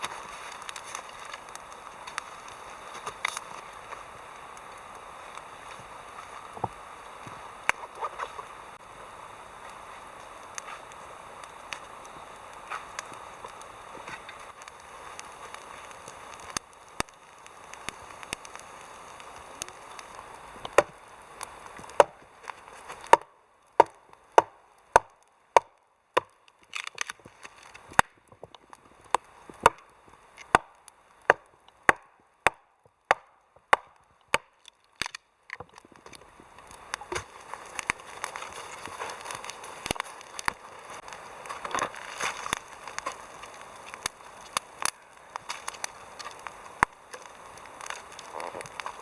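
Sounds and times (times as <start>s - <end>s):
wood chopping strikes: 20.7s - 20.9s, 22.0s - 22.2s, 23.0s - 26.3s, 30.5s - 35.7s.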